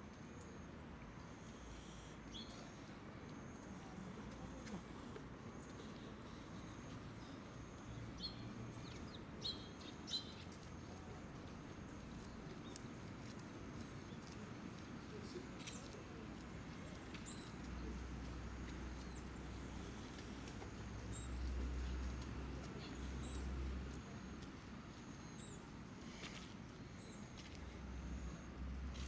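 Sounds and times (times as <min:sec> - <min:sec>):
faint bird chirps: 0:01.4 - 0:02.9.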